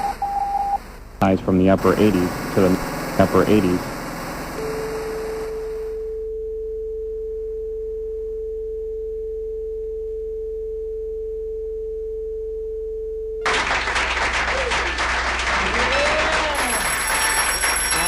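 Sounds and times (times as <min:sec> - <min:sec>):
steady test tone: 0:00.0 - 0:13.4
faint low hum: 0:00.0 - 0:17.5.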